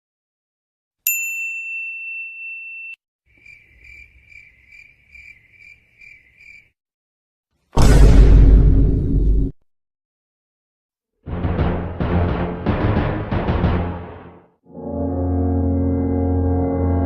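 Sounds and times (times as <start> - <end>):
cricket chirp effect: 3.3 - 6.8
loud deep boom: 7.8 - 9.6.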